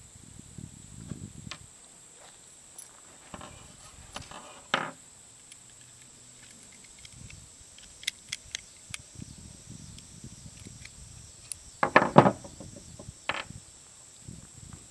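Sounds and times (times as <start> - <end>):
rifle parts clicking: 5.4 - 9.0
clatter of knocks: 11.8 - 13.5.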